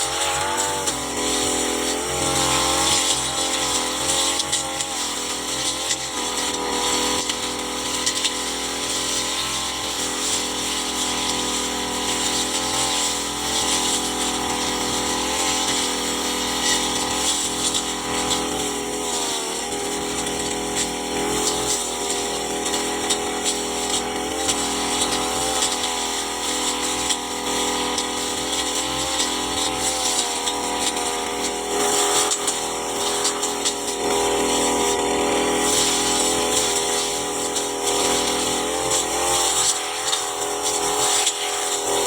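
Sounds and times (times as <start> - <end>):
brush cutter motor whine: 0.0 - 42.0.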